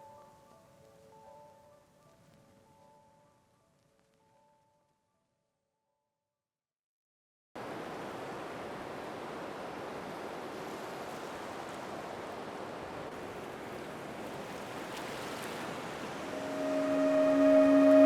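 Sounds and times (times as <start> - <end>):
ocean waves washing: 7.6 - 18.0.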